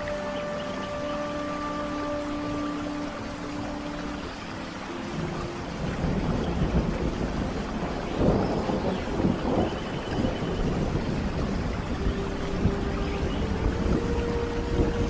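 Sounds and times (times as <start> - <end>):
steady rain: 0.0 - 15.0
thunder rumbling: 4.8 - 15.0.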